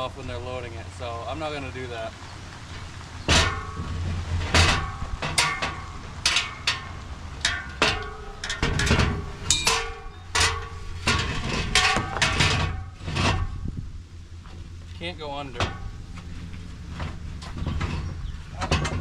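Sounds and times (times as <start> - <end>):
metallic clanks and knocks: 3.2 - 13.7, 15.5 - 19.0.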